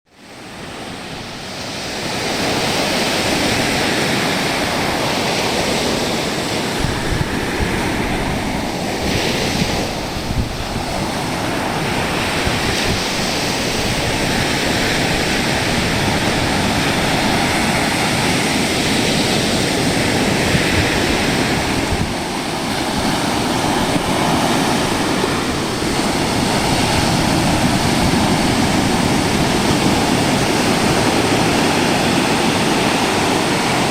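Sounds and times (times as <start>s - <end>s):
ocean waves breaking on beach: 0.1s - 33.9s.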